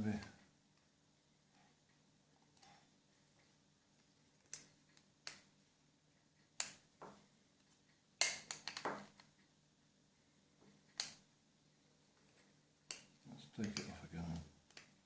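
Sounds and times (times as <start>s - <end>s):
plastic parts clicking: 8.2s - 9.3s.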